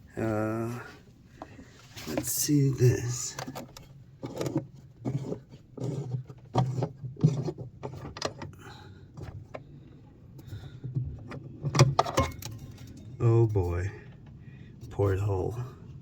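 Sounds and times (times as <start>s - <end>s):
knocks and clunks of handling: 1.3s - 2.4s, 3.1s - 13.2s.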